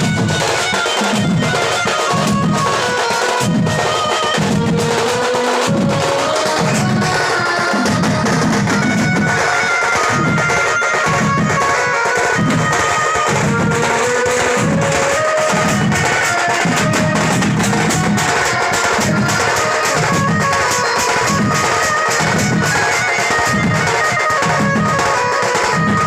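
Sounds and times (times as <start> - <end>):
heavy steady drumming: 0.0 - 26.0
reedy wind melody: 0.0 - 26.0.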